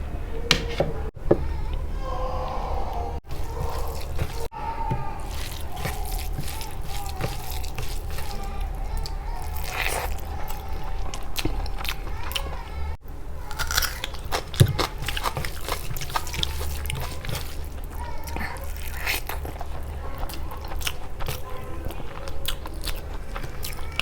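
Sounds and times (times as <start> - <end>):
crunching: 3.2 - 24.0
person chewing and biting: 3.3 - 10.6, 13.5 - 21.4.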